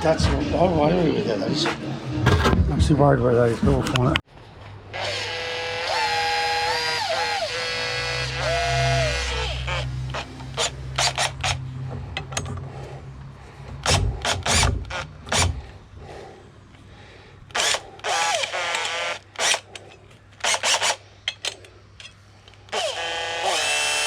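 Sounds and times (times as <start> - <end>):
power drill spinning: 4.9 - 11.7, 13.8 - 15.7, 17.4 - 21.6, 22.5 - 24.0
sharp mechanical clicks and knocks: 10.0 - 12.8, 13.6 - 15.7.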